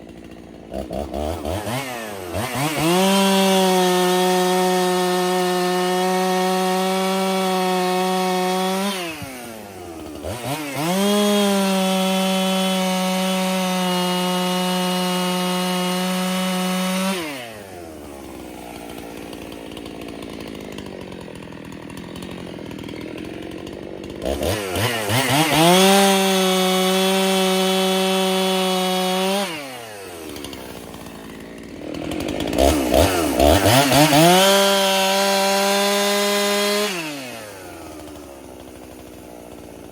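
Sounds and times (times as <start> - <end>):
chainsaw revving and idling: 0.0 - 39.9.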